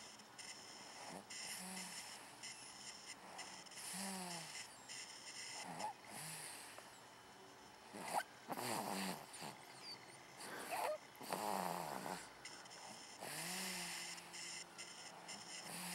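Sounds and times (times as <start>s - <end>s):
snoring: 0.9s - 2.2s, 3.3s - 4.7s, 5.4s - 6.8s, 7.9s - 9.6s, 10.4s - 12.3s, 12.9s - 15.9s.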